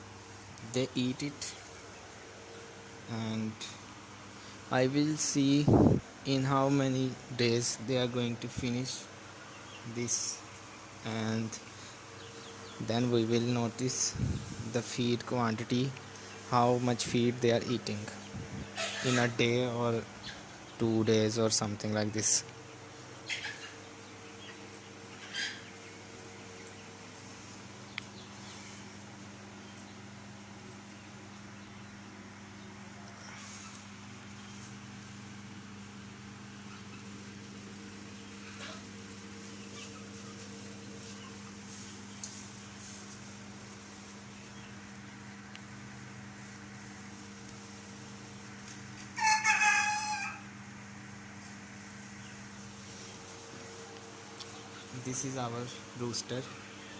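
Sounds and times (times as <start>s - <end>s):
steady low hum: 0.0s - 49.2s, 50.4s - 56.9s
chicken call: 18.7s - 19.4s, 25.2s - 25.8s, 49.0s - 50.5s
rooster crowing: 49.1s - 50.6s.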